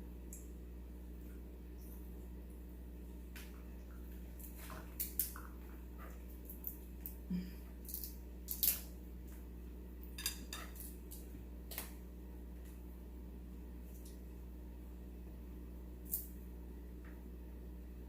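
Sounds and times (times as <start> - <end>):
seafood shells cracking: 7.8 - 9.0.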